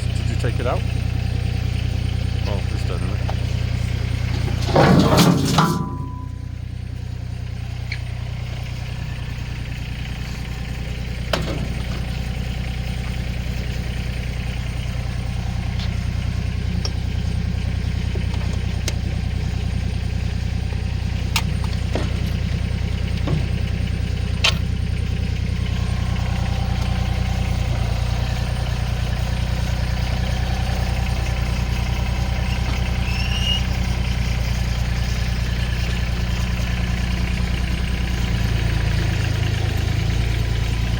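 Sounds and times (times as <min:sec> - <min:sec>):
tractor diesel engine idling: 0:00.0 - 0:40.9
sharp clicks and knocks: 0:11.3 - 0:12.4, 0:18.0 - 0:19.3, 0:20.7 - 0:24.7.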